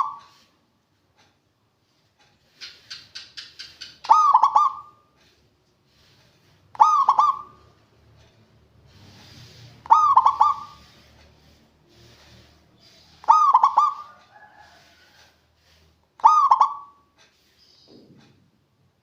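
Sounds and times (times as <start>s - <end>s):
dove cooing: 4.0s - 5.0s, 6.8s - 7.7s, 9.2s - 11.0s, 12.9s - 14.7s, 16.2s - 17.0s.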